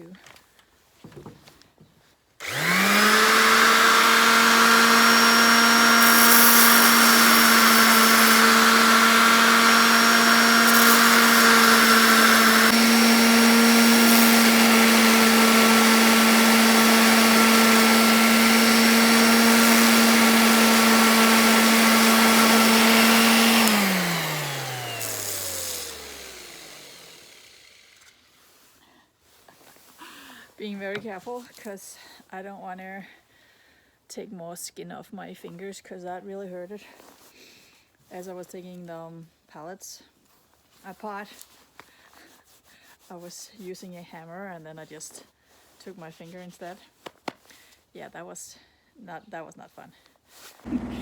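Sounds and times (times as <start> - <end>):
motor winding down: 2.4 - 28.0, 50.7 - 51.0
electric sander running: 2.4 - 28.1, 50.7 - 51.0.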